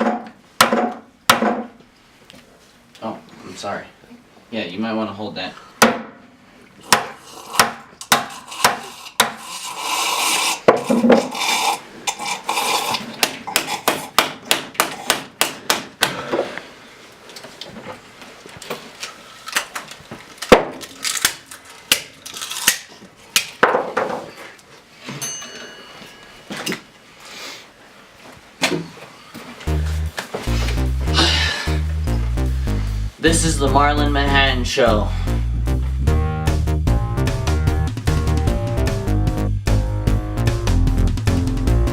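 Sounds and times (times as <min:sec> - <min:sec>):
hard objects knocking and clattering: 0:10.7 - 0:11.4, 0:23.4 - 0:24.4.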